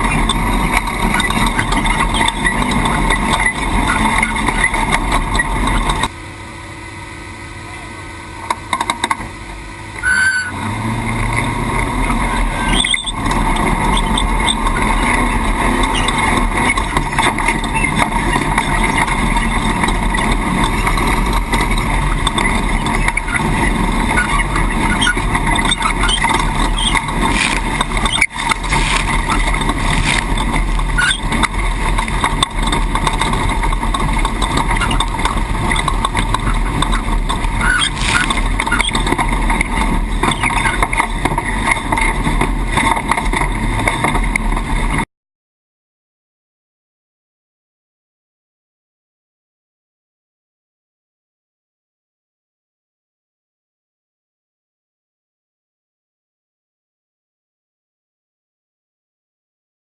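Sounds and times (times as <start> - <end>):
race truck engine: 0.0 - 45.1
rough terrain noise: 0.0 - 45.1.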